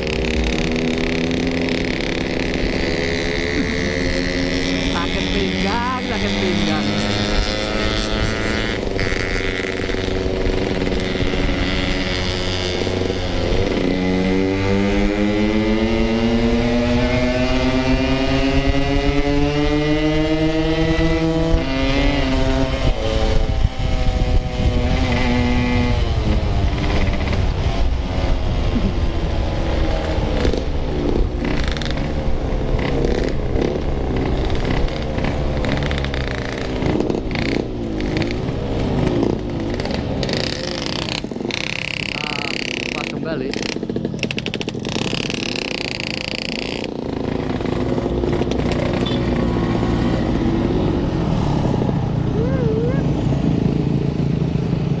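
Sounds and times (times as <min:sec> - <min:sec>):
motorcycle engine accelerating: 0:00.0 - 0:55.0
rattle: 0:39.0 - 0:49.2.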